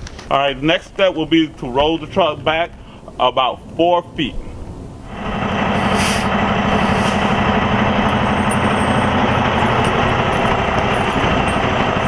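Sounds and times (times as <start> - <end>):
diesel truck engine running: 4.6 - 12.0.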